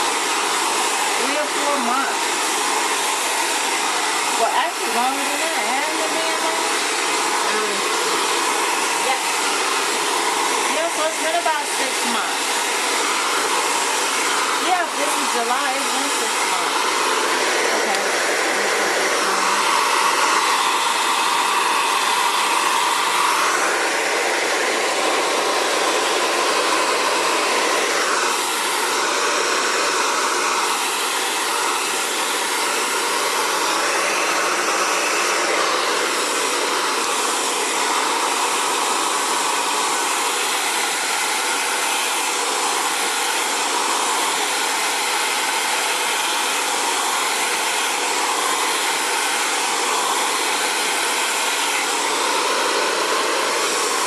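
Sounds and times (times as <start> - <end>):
hair dryer blowing: 0.0 - 54.0.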